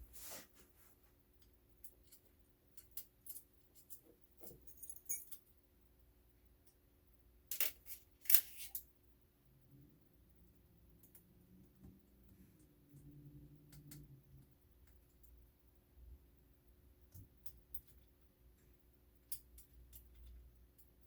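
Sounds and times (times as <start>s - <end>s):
faint steady hum: 0.0s - 21.0s
light metallic jingle: 1.8s - 5.6s.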